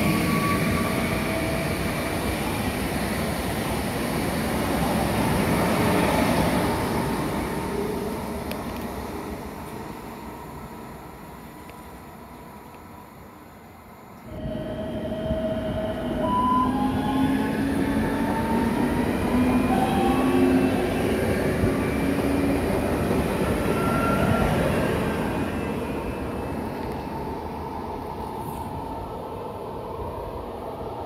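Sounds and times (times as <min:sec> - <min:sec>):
train wheels rushing on rails: 0:14.4 - 0:29.2.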